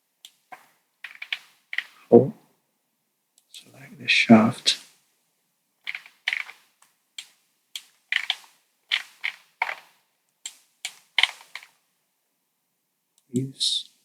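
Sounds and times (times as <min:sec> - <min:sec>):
computer mouse clicking: 0:00.2 - 0:02.0, 0:05.9 - 0:11.8.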